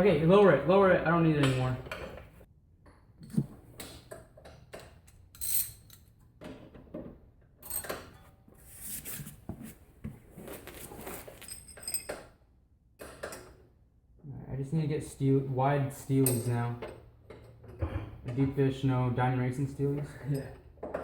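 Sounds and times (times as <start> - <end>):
metal tools clinking and knocking: 4.7 - 6.2, 7.6 - 8.3, 11.2 - 12.4, 16.2 - 18.5, 20.0 - 21.0.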